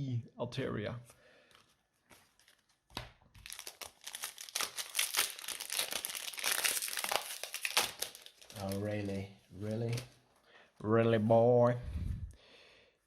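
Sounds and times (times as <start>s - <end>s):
foil wrapper crinkling: 1.5s - 9.2s.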